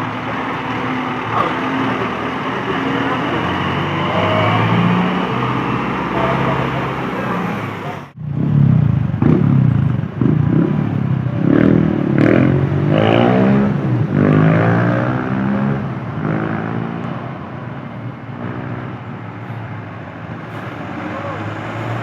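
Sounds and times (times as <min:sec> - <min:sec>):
bus engine revving past: 0:00.0 - 0:22.0.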